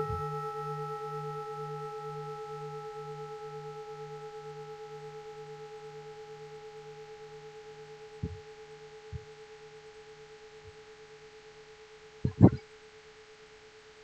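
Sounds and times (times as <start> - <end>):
temple bell ringing: 0.0 - 6.6
low throbbing hum: 8.2 - 8.5.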